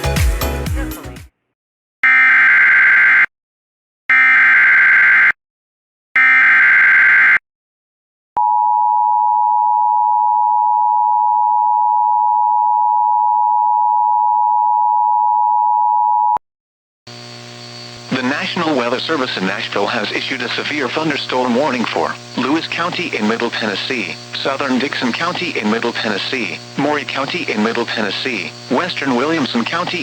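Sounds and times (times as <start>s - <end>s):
digital data screech: 17.6s - 30.0s.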